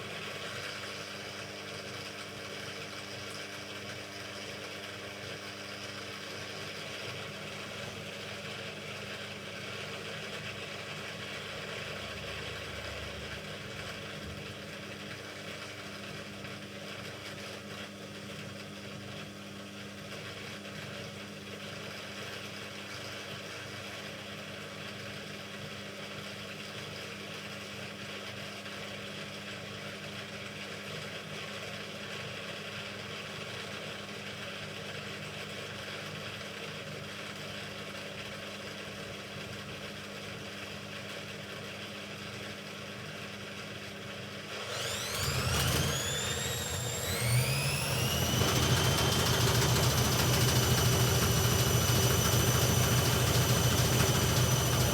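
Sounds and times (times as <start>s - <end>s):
drain pump humming: 44.5s - 54.9s
washing machine drum spin whine: 44.5s - 54.9s.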